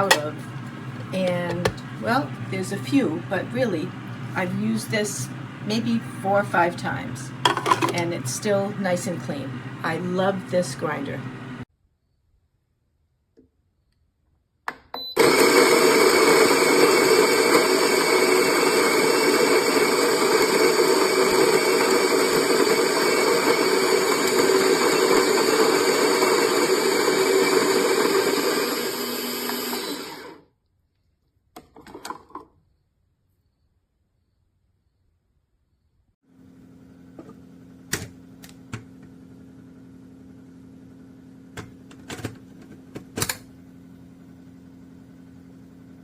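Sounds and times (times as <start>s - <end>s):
coffee grinder whirring: 0.0s - 11.6s, 15.2s - 30.4s.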